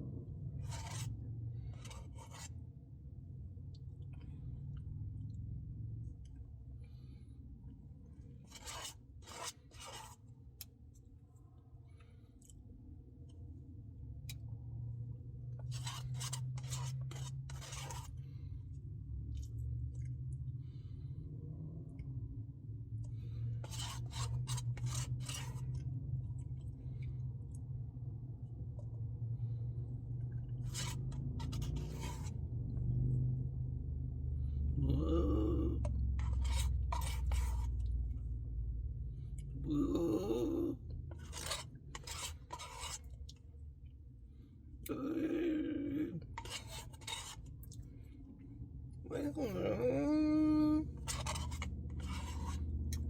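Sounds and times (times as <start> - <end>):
spoon scraping ice cream cup: 0.6 - 2.6, 8.4 - 10.3, 15.6 - 20.2, 23.1 - 27.6, 29.5 - 33.2, 34.8 - 38.3, 39.3 - 43.5, 44.9 - 47.9, 50.8 - 53.0
low hum: 10.4 - 53.0
chewing: 19.3 - 20.4
person humming: 34.8 - 35.9, 39.6 - 40.8, 44.9 - 46.2, 49.1 - 50.9.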